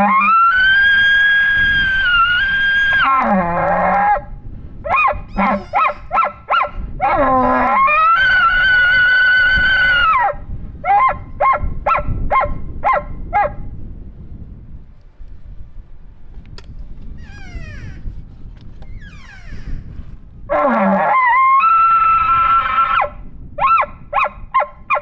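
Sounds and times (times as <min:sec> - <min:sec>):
elk bugling: 0:04.9 - 0:10.2, 0:17.2 - 0:18.2, 0:18.8 - 0:23.1.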